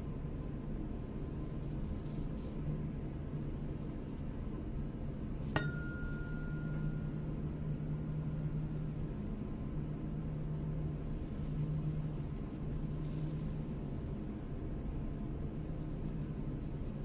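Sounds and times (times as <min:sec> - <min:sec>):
steady low hum: 0:00.0 - 0:17.0
tuning fork ringing: 0:05.6 - 0:09.3.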